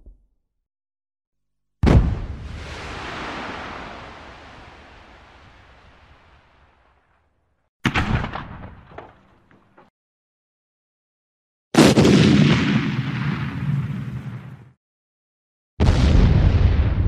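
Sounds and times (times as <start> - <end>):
rumbling explosion: 1.8 - 3.8, 11.8 - 14.7, 15.8 - 17.0.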